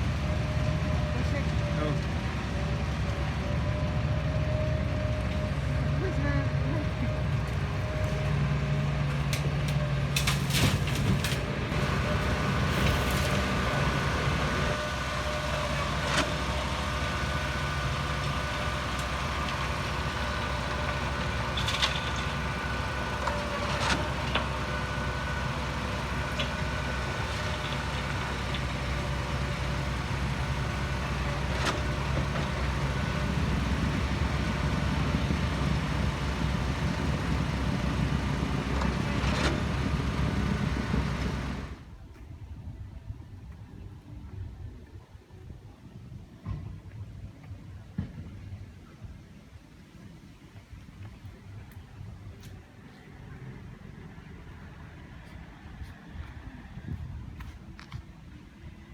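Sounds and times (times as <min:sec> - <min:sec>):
diesel machinery running: 0:00.0 - 0:42.7.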